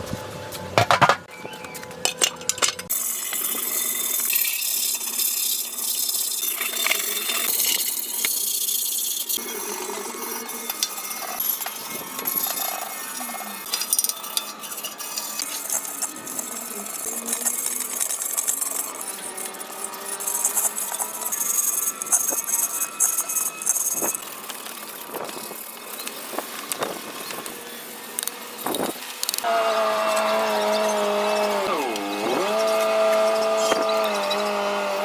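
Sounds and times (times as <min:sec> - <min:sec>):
hand tools scraping metal: 0:00.6 - 0:01.3, 0:02.0 - 0:35.0
metal parts clinking: 0:02.0 - 0:29.5.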